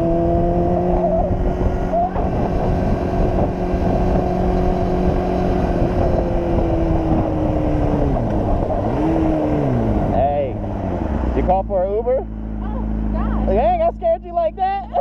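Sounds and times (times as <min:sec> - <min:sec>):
wind rushing over microphone: 0:00.0 - 0:11.4
motorcycle engine cruising: 0:00.0 - 0:15.0.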